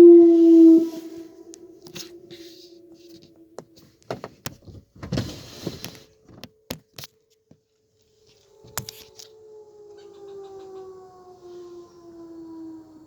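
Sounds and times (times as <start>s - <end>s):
warning siren steady tone: 0.0s - 4.1s, 7.6s - 13.0s
noisy rustle: 0.1s - 6.3s.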